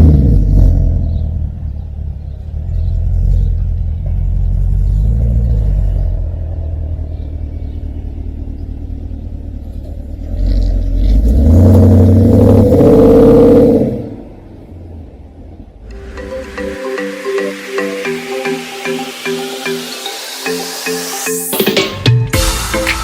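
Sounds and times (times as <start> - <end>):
car engine revving: 0.0 - 16.2.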